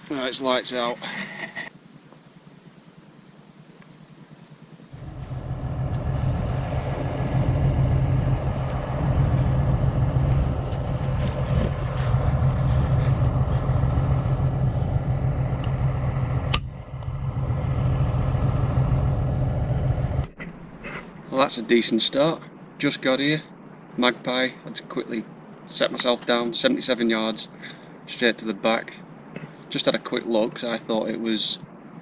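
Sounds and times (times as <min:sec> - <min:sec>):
vehicle engine humming: 0:01.5 - 0:21.3.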